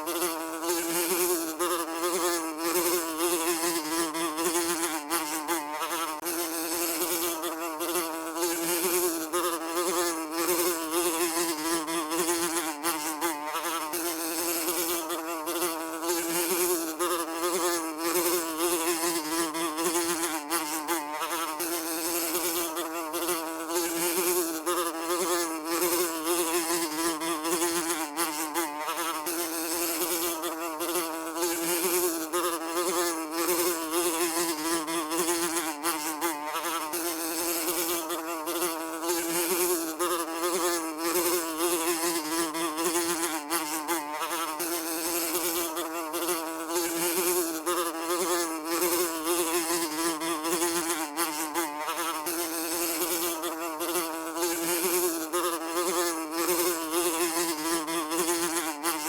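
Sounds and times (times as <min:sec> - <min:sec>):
fly buzzing: 0:00.0 - 0:59.0.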